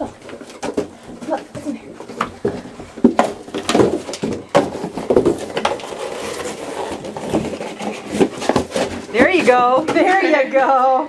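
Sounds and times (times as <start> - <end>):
coyote tearing at cardboard box: 0.0 - 10.2
paper rustling and tearing: 3.5 - 9.9.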